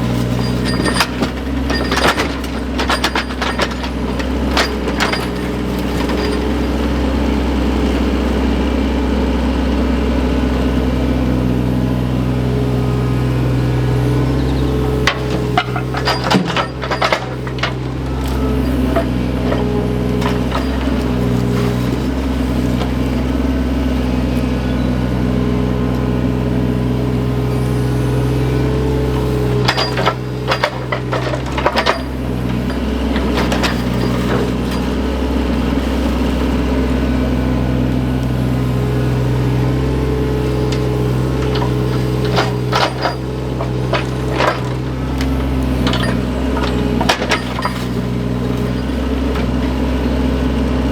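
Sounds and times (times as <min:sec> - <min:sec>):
diesel engine running under load: 0:00.0 - 0:50.9
clanks and knocks: 0:00.2 - 0:06.7, 0:14.8 - 0:23.0, 0:29.6 - 0:35.0, 0:40.6 - 0:49.6.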